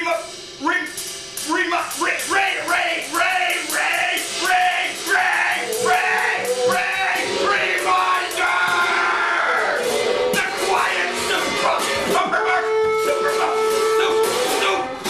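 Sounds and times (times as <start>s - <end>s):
guitar: 1.6s - 15.0s
bassoon: 9.3s - 15.0s.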